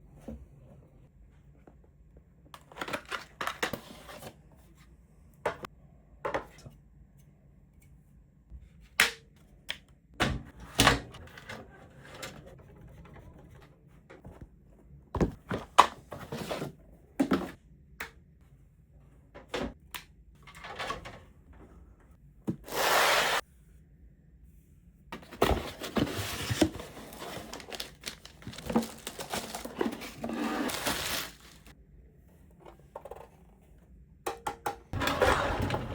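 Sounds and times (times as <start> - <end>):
rustling: 25.5 - 31.7.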